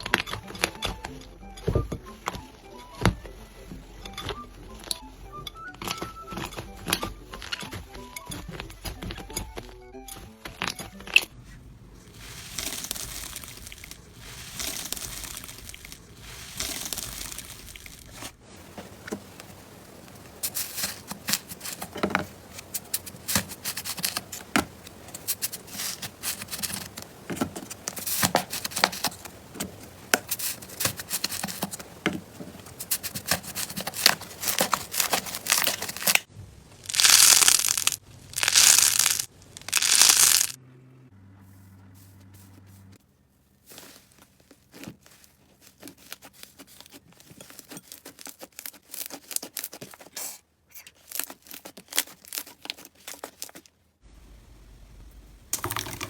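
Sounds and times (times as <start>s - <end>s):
slime squishing: 11.1s - 18.4s, 20.3s - 40.6s, 43.6s - 53.7s.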